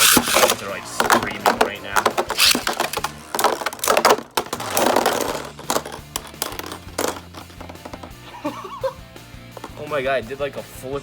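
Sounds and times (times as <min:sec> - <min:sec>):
spinning tops clashing: 0:00.0 - 0:07.9.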